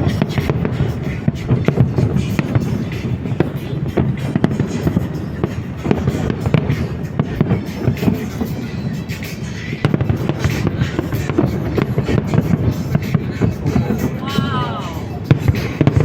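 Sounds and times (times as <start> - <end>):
fireworks bangs and crackles: 0.0 - 16.0
music: 0.0 - 16.0.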